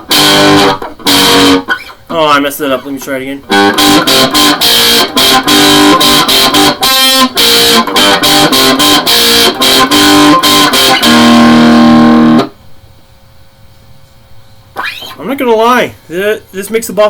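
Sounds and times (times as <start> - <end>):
distorted electric guitar riff: 0.0 - 12.7, 14.7 - 15.4.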